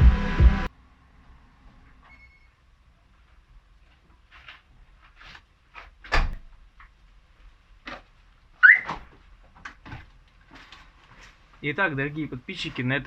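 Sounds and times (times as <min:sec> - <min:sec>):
short rising squeak: 0:02.0 - 0:02.6, 0:08.6 - 0:09.0.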